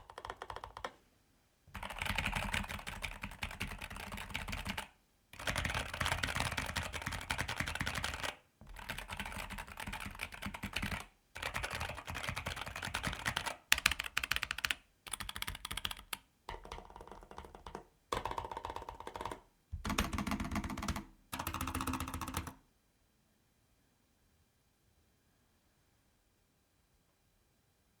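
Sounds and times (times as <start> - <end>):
mechanical keyboard typing: 0.0 - 1.0, 1.8 - 22.6.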